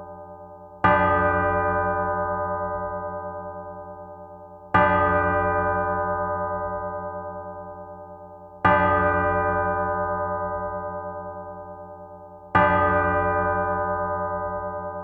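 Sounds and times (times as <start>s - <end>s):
large church bell tolling: 0.0s - 15.0s.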